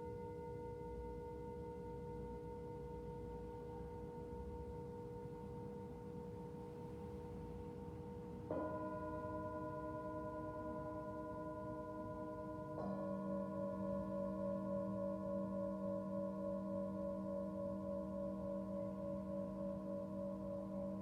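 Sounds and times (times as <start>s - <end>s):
singing bowl struck: 8.5s - 21.0s
singing bowls ringing: 8.5s - 21.0s.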